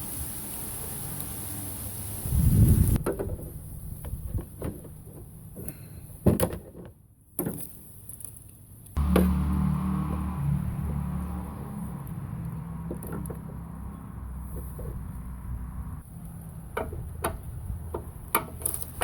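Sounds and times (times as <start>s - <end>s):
sharp knocks and clanks: 12.8s - 13.7s, 16.7s - 19.0s.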